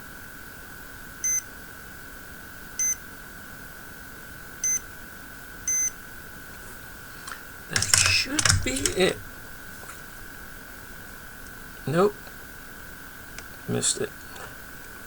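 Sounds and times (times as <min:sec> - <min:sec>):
short electronic beeps: 0:01.2 - 0:01.4, 0:02.8 - 0:03.0, 0:04.6 - 0:04.8, 0:05.7 - 0:05.9.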